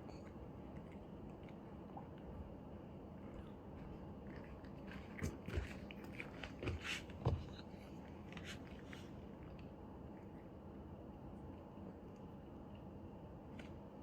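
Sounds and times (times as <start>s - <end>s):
cat chewing food: 0.0s - 14.0s.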